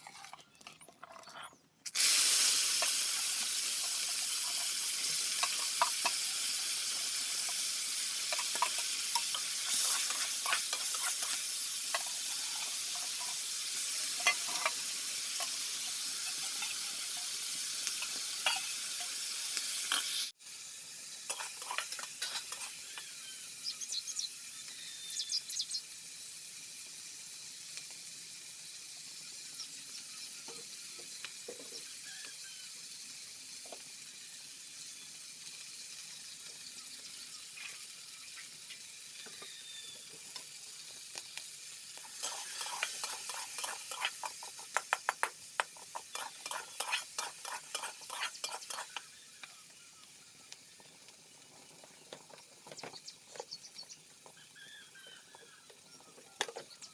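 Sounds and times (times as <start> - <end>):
food sizzling in a pan: 1.9 - 56.9
spatula scraping a pan: 2.8 - 20.3, 21.2 - 23.2, 42.0 - 49.2.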